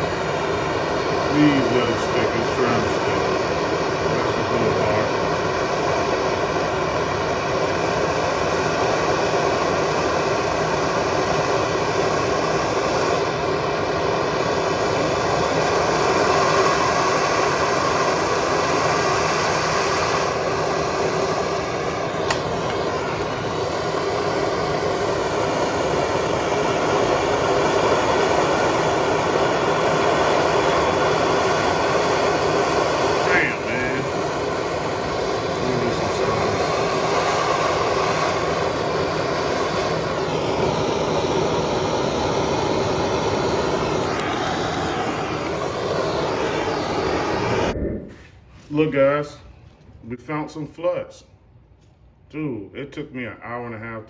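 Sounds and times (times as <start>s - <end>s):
torch flame rushing: 0.0s - 48.9s
sharp click: 22.2s - 22.8s.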